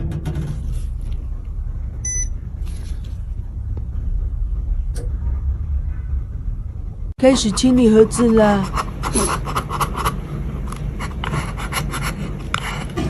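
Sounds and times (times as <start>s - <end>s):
steady low hum: 0.0s - 13.0s
short electronic beep: 2.0s - 2.4s.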